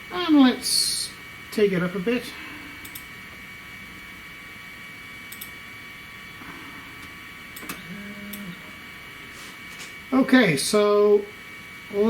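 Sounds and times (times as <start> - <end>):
high electrical tone: 0.0 - 12.0
light clicks: 5.3 - 5.5.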